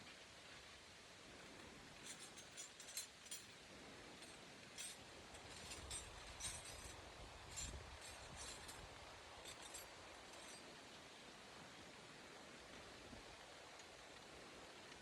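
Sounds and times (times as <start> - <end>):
hand tools clinking: 2.0 - 3.5, 4.2 - 8.8, 9.5 - 10.6.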